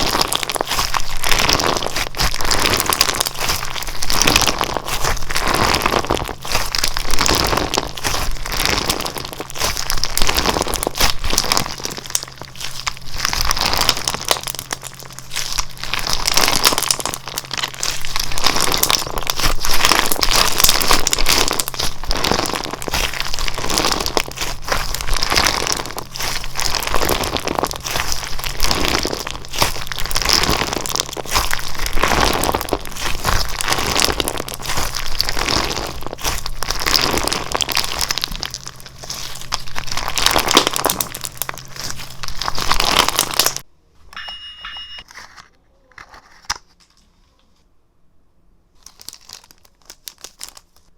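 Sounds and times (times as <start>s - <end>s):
slime crackling and squishing: 0.0s - 43.7s, 48.7s - 50.9s.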